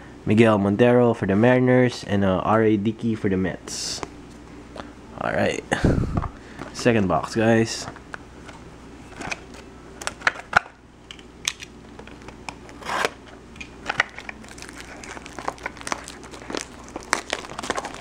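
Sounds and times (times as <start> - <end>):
packaging tearing and crinkling: 13.8 - 18.0.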